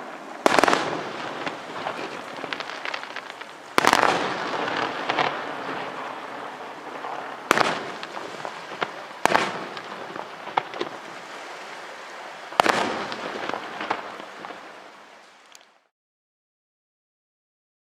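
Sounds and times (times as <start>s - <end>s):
fireworks shells bursting: 0.0s - 11.2s
fireworks crackling: 0.0s - 15.9s.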